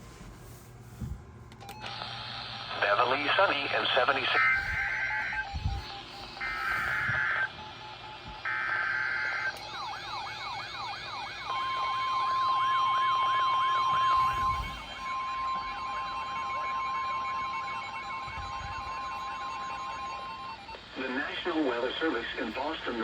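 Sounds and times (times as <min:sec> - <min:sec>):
steady warning alarm tone: 0:01.6 - 0:23.0
buzzy data bursts: 0:02.4 - 0:09.5
warbling alert siren: 0:04.3 - 0:20.8.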